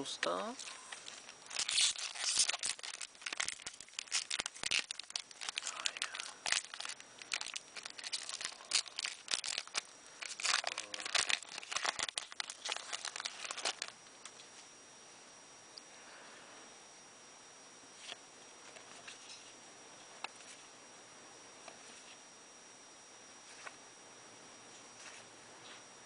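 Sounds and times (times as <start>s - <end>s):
foil wrapper crinkling and tearing: 0.6s - 14.0s.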